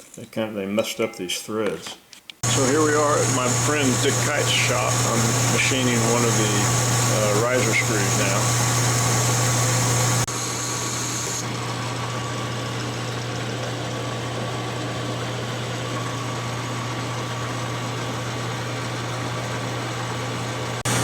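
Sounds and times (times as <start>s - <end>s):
metal lathe running: 2.4s - 14.5s, 20.7s - 21.0s.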